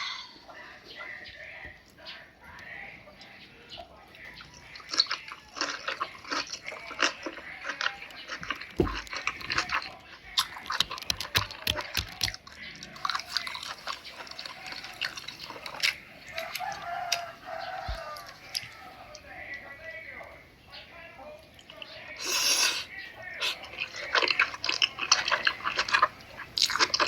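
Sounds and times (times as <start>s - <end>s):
wet chewing and mouth smacking: 4.3s - 19.5s, 21.6s - 27.0s.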